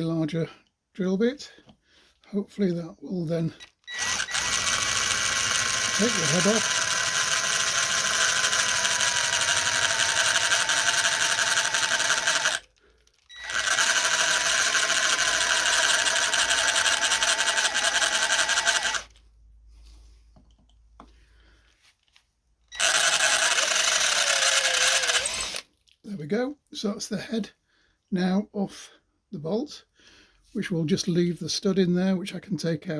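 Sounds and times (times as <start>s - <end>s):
electric drill whining: 3.6s - 19.2s, 22.7s - 25.6s.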